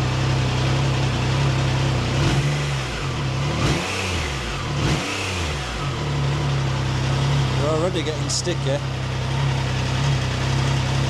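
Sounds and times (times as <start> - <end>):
motorcycle engine idling and revving: 0.0 - 11.0.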